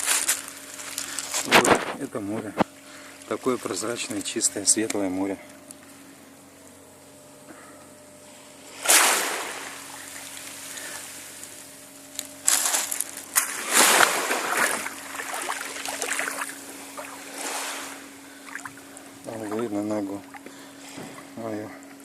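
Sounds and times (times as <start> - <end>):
sea waves washing in shallows: 8.7 - 11.5, 13.4 - 18.7.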